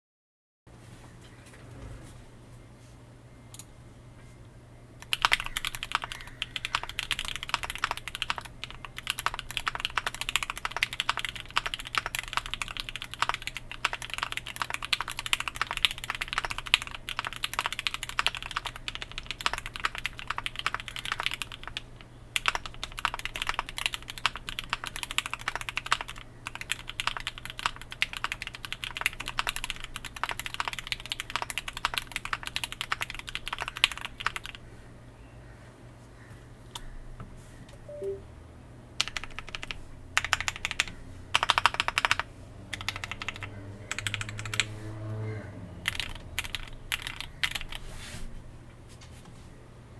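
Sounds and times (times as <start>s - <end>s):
mechanical keyboard typing: 5.0s - 34.6s, 39.0s - 44.7s, 45.8s - 47.8s.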